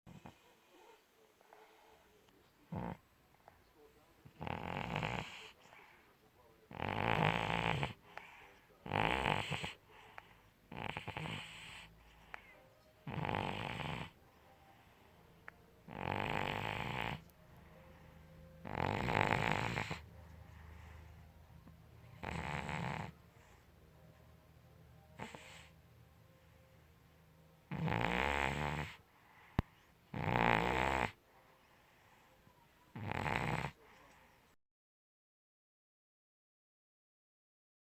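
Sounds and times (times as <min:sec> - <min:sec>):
cat snoring: 0:02.7 - 0:03.0, 0:04.2 - 0:06.0, 0:06.7 - 0:23.6, 0:25.1 - 0:26.5, 0:27.7 - 0:31.2, 0:32.9 - 0:34.0
cat breathing quietly: 0:07.4 - 0:24.2, 0:25.2 - 0:26.8, 0:28.4 - 0:30.0, 0:31.2 - 0:32.5.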